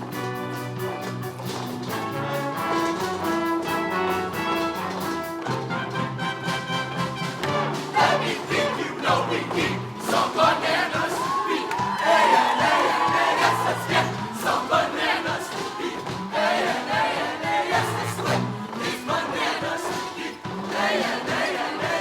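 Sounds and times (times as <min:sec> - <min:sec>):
crowd noise: 0:00.0 - 0:22.0
drums: 0:00.0 - 0:22.0
choir singing: 0:02.6 - 0:22.0
bass guitar: 0:17.8 - 0:18.6.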